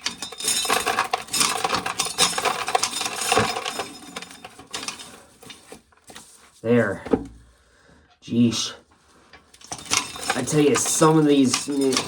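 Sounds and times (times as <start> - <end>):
corn sheller clattering: 0.0 - 6.5, 9.6 - 12.0.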